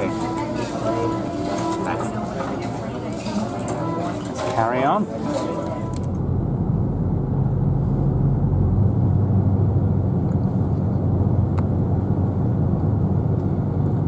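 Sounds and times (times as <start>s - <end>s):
car road and engine rumble: 5.7s - 14.0s.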